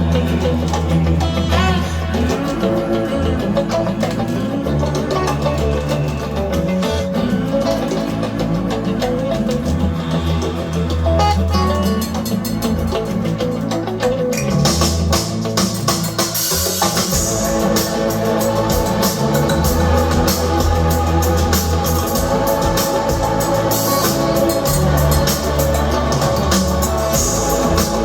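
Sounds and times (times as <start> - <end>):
bass notes: 0.0 - 28.0
organ chords: 0.0 - 28.0
drum kit beat: 14.4 - 28.0.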